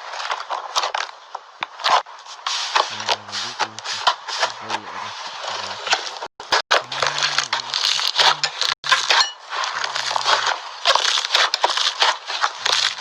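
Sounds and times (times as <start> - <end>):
slime crackling and popping: 6.8 - 13.0.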